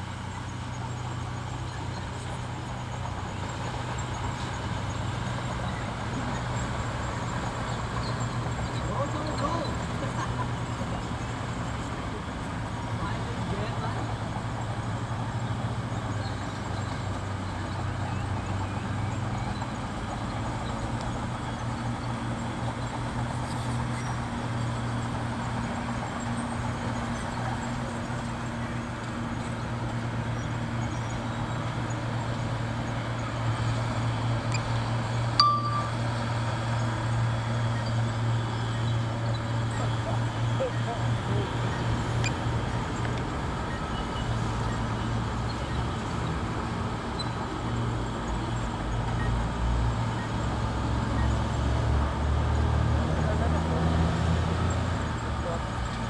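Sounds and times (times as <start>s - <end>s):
bulldozer diesel engine running: 0.0s - 35.4s
brief high beep: 35.4s - 36.4s.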